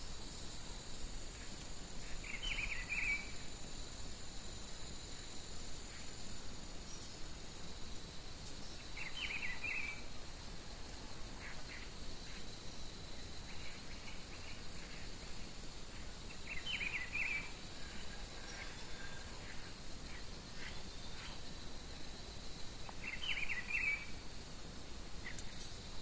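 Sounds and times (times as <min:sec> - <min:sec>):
high-pitched insect drone: 0:00.0 - 0:26.0
faint bird chirps: 0:01.4 - 0:03.5, 0:08.4 - 0:10.2, 0:11.3 - 0:21.6, 0:22.8 - 0:24.2.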